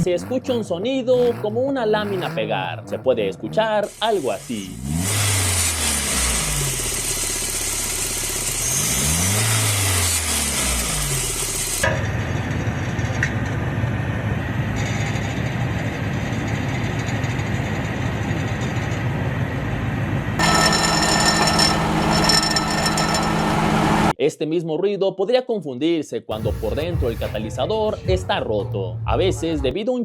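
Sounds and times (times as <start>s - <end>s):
car engine revving: 0.0s - 11.8s, 20.4s - 24.1s
exhaust heat shield rattling: 20.4s - 24.1s.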